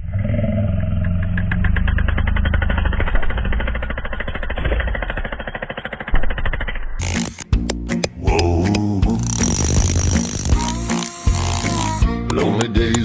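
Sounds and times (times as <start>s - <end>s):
jackhammer hammering rapidly: 1.9s - 7.6s, 9.2s - 13.0s
music: 7.0s - 13.0s.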